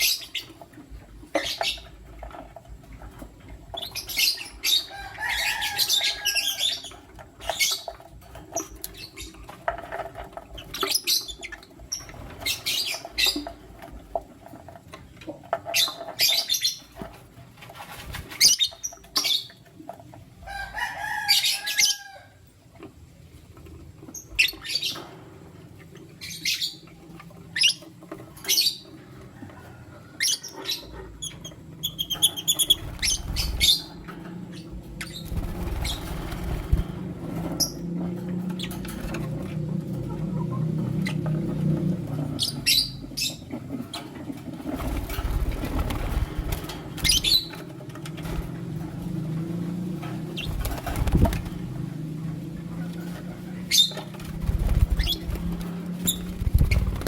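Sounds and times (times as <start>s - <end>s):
wings fluttering and rustling: 0.0s - 57.0s
lovebirds chirping: 30.2s - 36.8s, 52.3s - 57.0s.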